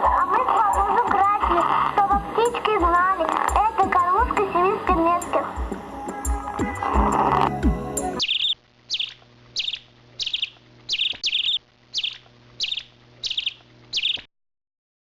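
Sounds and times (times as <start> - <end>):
small bird chirping: 5.6 - 14.3.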